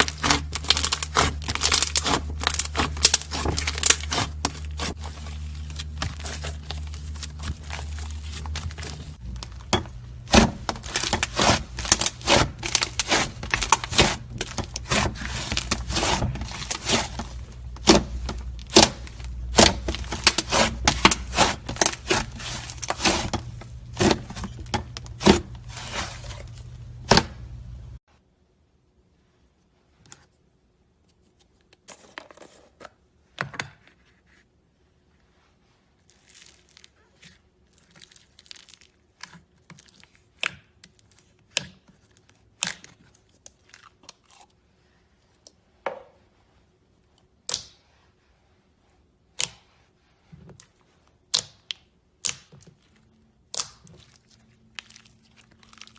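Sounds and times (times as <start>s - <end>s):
slime crackling and popping: 0.0s - 28.0s.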